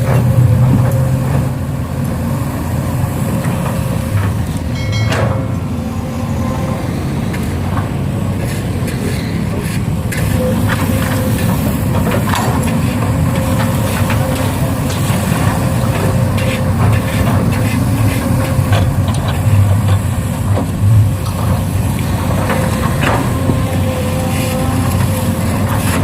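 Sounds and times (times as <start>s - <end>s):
model excavator motor drone: 9.8s - 26.0s.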